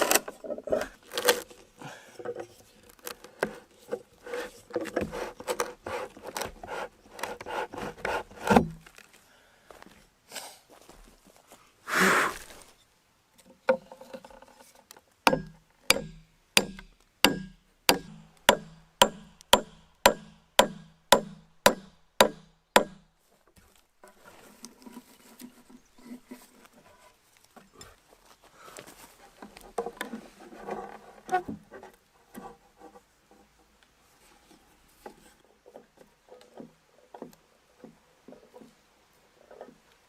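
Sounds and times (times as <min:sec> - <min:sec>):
tool scraping across wood: 0:02.3 - 0:08.9, 0:23.6 - 0:27.2, 0:29.1 - 0:33.6.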